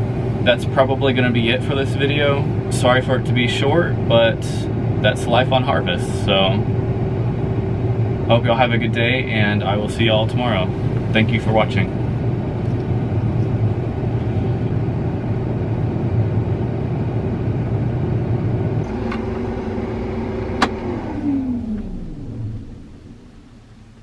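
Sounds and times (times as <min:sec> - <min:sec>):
engine running and winding down: 0:09.2 - 0:23.6
switch click: 0:20.6 - 0:20.8.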